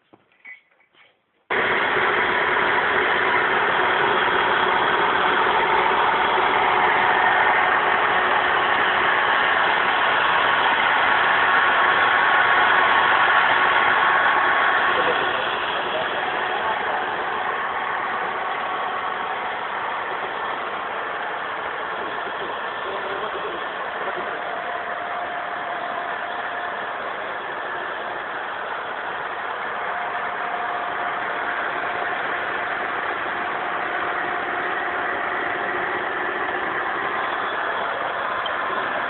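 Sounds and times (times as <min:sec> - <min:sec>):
machine running steadily: 0:01.5 - 0:39.0.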